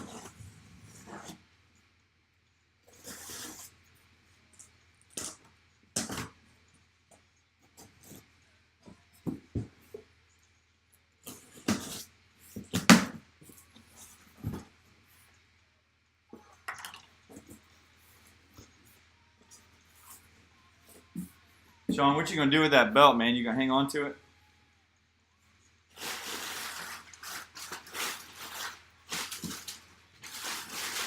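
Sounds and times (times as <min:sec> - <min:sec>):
packaging rustling: 0:25.9 - 0:31.0.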